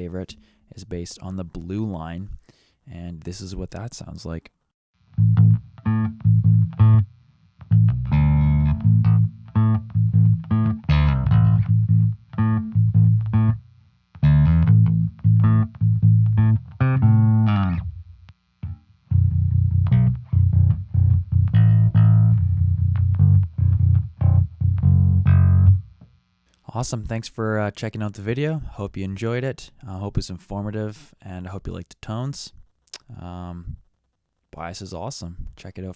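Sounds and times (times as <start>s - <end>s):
bass guitar riff: 0.0s - 2.4s, 5.1s - 26.1s.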